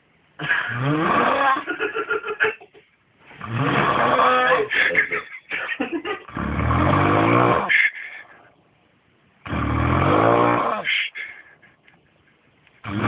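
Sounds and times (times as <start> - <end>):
person snoring heavily: 0.4 - 1.7, 3.4 - 4.7, 6.2 - 7.9, 9.4 - 11.2
high-pitched snort: 3.3 - 4.6, 6.3 - 7.9, 9.4 - 10.9.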